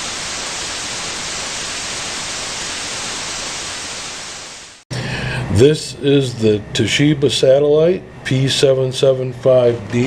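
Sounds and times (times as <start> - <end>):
static hiss: 0.0 - 4.8.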